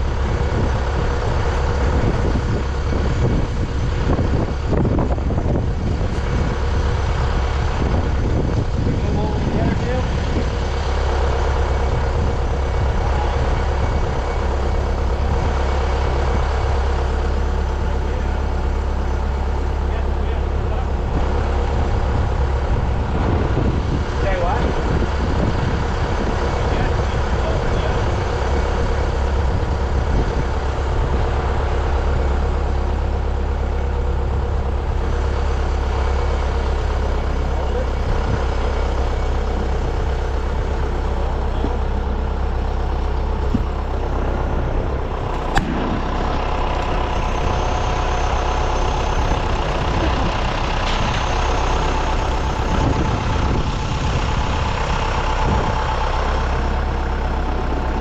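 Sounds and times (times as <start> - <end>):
heavy diesel engine running: 0.0 - 58.0
sharp click: 45.3 - 45.8.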